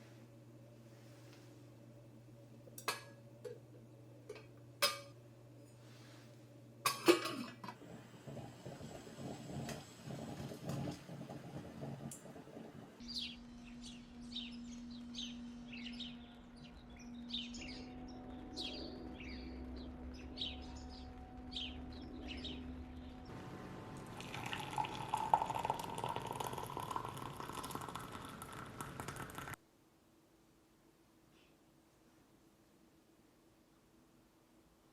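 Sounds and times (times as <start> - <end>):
steady low hum: 0.0 - 29.3
small birds chirping: 13.0 - 23.2.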